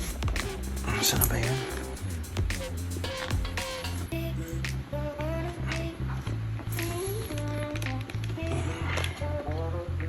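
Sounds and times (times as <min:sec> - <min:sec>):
melody over pulsing bass: 0:00.0 - 0:05.5.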